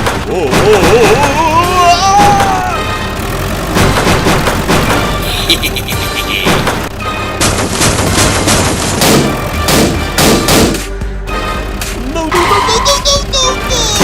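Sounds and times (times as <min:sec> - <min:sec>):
loud bangs and clatter: 0:00.0 - 0:01.4, 0:03.2 - 0:05.4, 0:06.4 - 0:11.0
background music: 0:00.2 - 0:14.0.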